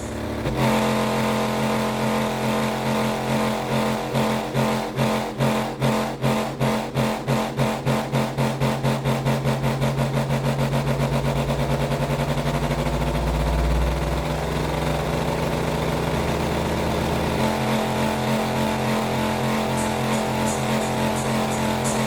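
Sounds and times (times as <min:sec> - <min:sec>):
bass-heavy music through subwoofer: 0:00.0 - 0:00.8, 0:08.9 - 0:22.0.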